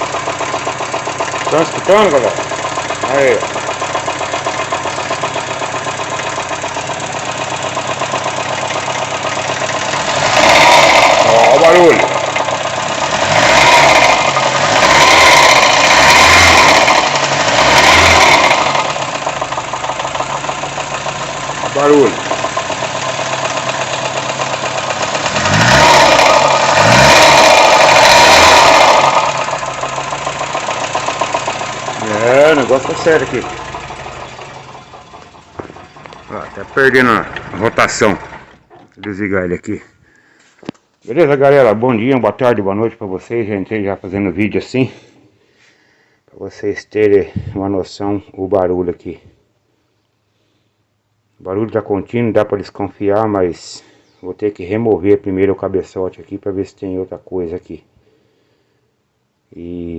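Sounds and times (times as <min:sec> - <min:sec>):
car engine running: 0:00.0 - 0:38.9
mechanical knocking in engine: 0:33.6 - 0:38.5.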